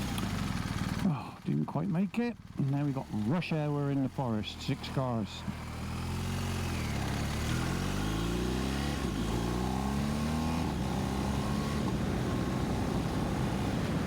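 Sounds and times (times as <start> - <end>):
motorcycle engine accelerating: 0.0 - 14.0
rushing wind: 7.8 - 14.0.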